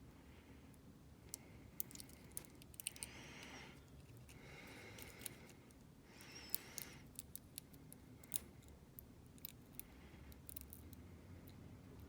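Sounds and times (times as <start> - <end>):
small lock parts clicking: 1.3 - 3.1, 5.0 - 5.6, 6.5 - 11.6.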